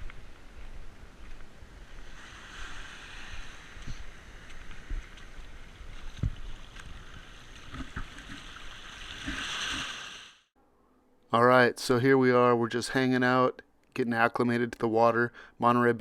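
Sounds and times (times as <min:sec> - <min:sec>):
seawater sloshing and splashing: 0:02.0 - 0:10.2.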